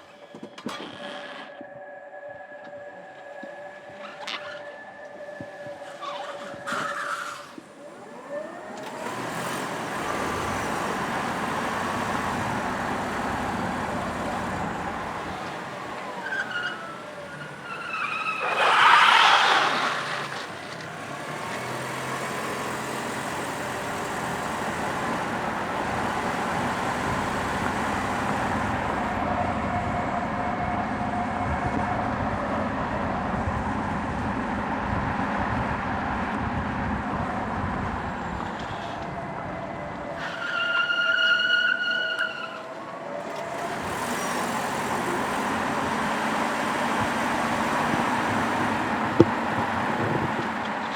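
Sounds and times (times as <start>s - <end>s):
loud tyre screech: 5.6s - 29.4s, 40.1s - 50.9s
tyres squealing: 5.8s - 29.2s, 40.2s - 50.9s.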